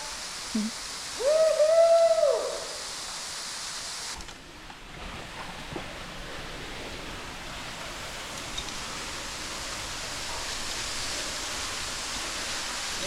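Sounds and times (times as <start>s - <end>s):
waterfall rushing: 0.0s - 4.2s, 7.0s - 13.0s.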